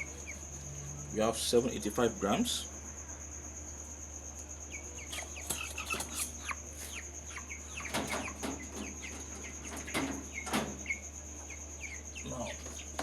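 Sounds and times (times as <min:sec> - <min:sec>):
chicks peeping: 0:03.0 - 0:13.0.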